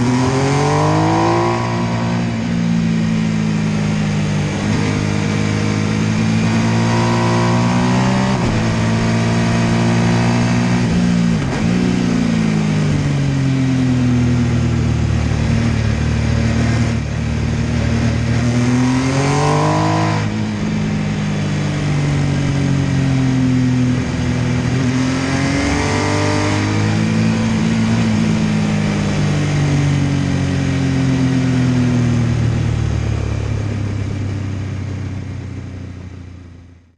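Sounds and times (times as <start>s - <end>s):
motorcycle engine accelerating: 0.0s - 36.9s.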